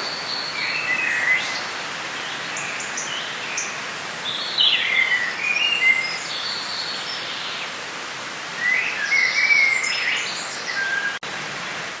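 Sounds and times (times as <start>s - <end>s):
songbirds singing: 0.0s - 7.8s, 8.5s - 11.3s.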